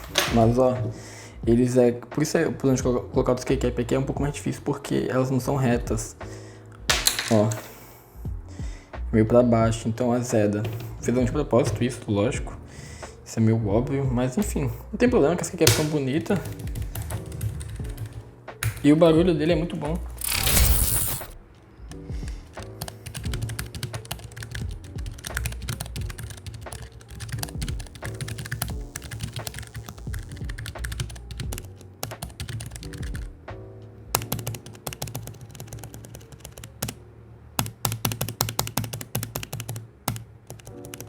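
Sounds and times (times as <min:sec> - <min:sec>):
mechanical keyboard typing: 0:15.6 - 0:19.0, 0:22.4 - 0:33.3, 0:34.2 - 0:37.0, 0:37.6 - 0:41.0.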